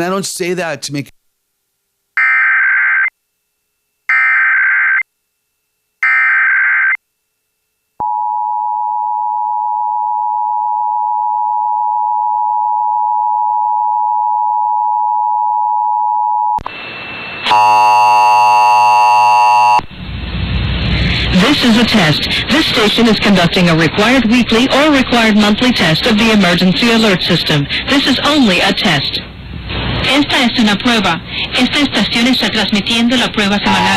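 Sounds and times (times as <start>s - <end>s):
two-tone attention signal: 17.3s - 19.8s.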